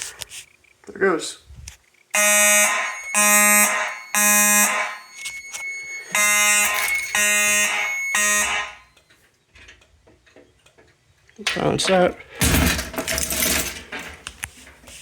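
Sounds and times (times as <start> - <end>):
fire alarm horns buzzing: 2.2 - 9.1.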